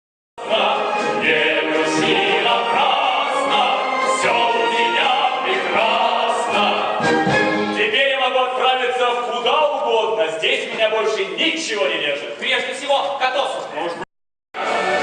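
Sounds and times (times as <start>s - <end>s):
orchestral accompaniment: 0.4s - 9.0s, 14.6s - 15.0s
operatic singing: 0.4s - 12.0s, 14.6s - 15.0s.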